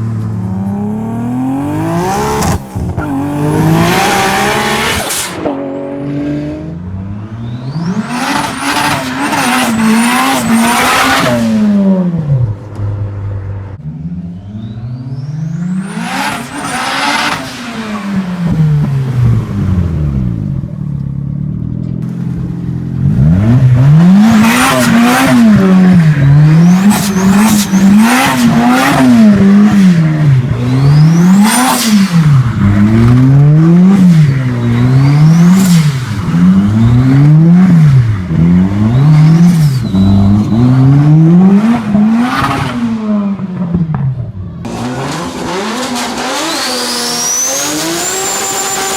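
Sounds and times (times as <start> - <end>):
car engine revving: 0.0 - 48.9
turbo whistle: 38.8 - 41.0.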